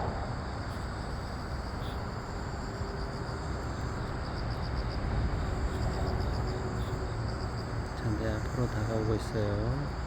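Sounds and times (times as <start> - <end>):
steady low rumble: 0.0 - 0.6
crickets chirping: 0.0 - 10.0.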